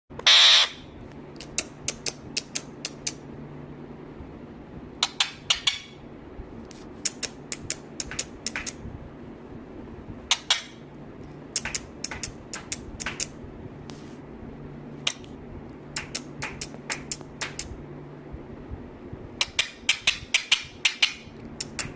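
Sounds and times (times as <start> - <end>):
steady low hum: 0.1 - 21.9
harsh high-pitched burst: 0.2 - 0.8
sharp clicks and taps: 1.4 - 3.2, 7.0 - 8.8, 10.3 - 13.4, 16.0 - 17.8, 19.4 - 21.9.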